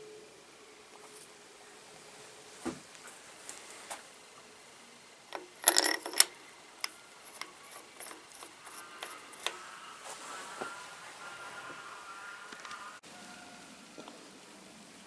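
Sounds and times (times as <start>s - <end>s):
metallic clicks of tools: 5.3s - 9.6s
metal clatter: 5.3s - 9.7s.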